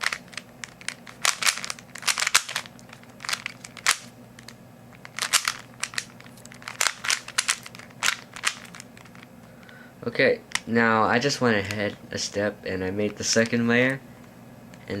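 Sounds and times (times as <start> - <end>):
puzzle cube plastic layers clicking: 0.0 - 9.2.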